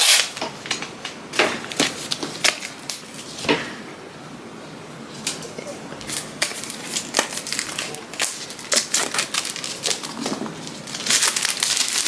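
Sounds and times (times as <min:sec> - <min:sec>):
wrapping crinkling: 0:05.2 - 0:12.0.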